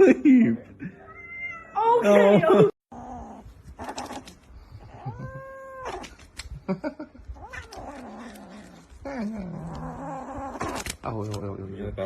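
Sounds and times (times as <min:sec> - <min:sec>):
cat yowling: 0:05.0 - 0:06.1.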